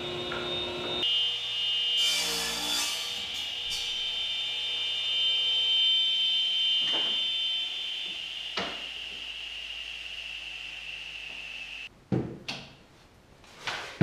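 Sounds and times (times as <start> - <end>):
high machine whine: 0.0 - 2.4, 3.3 - 11.9.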